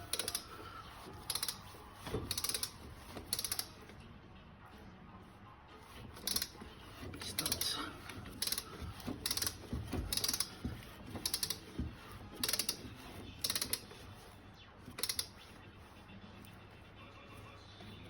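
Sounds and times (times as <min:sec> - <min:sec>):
ratchet wrench clicking: 0:00.0 - 0:00.5, 0:01.2 - 0:03.8, 0:06.2 - 0:07.7, 0:08.3 - 0:11.8, 0:12.4 - 0:14.0, 0:14.9 - 0:15.5.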